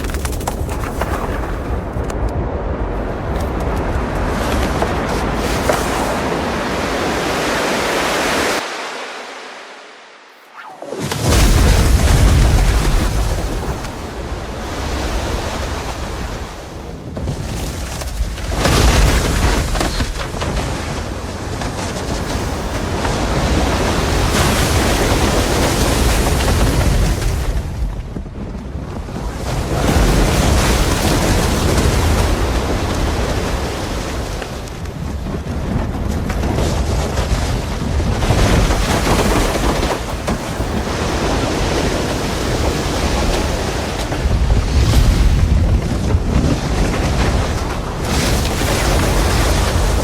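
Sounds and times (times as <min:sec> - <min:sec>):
ice and debris crackling: 0:00.0 - 0:02.4
deep avalanche rumble: 0:00.0 - 0:08.7, 0:10.8 - 0:50.0.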